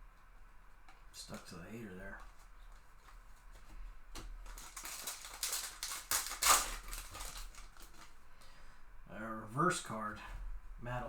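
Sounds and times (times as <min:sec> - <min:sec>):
trading cards rustling and clicking: 0:01.2 - 0:08.5.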